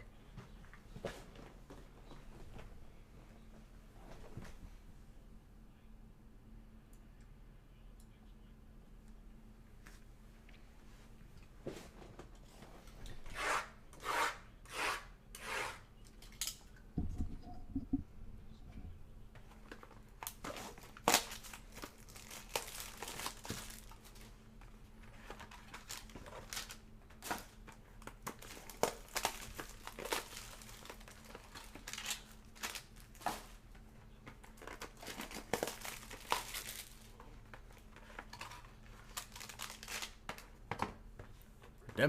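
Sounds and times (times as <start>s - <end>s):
plastic wrapping crinkling: 19.6s - 24.4s, 25.1s - 33.6s, 34.4s - 40.5s
packaging tearing: 20.2s - 24.2s, 25.3s - 33.5s, 34.6s - 37.1s, 38.4s - 40.5s.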